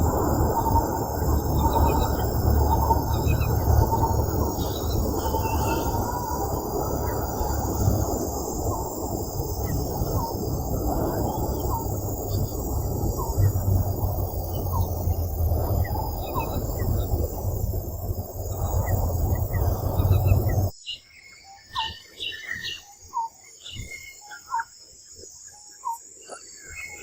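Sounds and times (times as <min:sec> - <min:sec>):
low rumbling noise: 0:00.0 - 0:20.7
high insect drone: 0:00.0 - 0:20.8.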